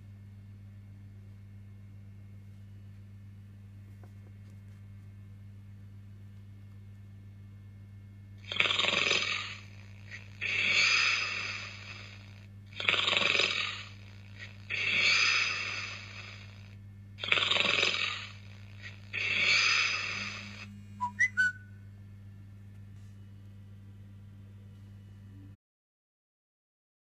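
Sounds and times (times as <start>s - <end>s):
steady low hum: 0.0s - 25.6s
person snoring: 8.4s - 21.6s
short chirping tones: 21.0s - 21.8s.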